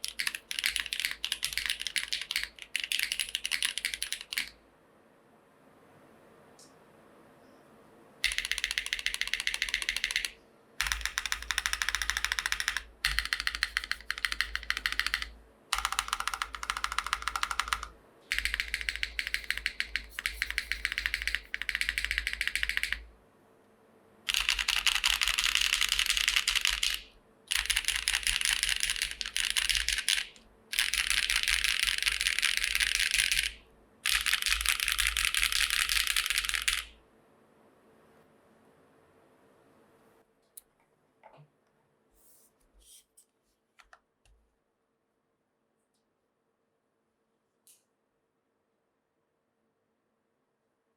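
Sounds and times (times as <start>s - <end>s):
fast typing on mechanical keyboard: 0.0s - 4.6s, 8.2s - 23.1s, 24.3s - 37.0s.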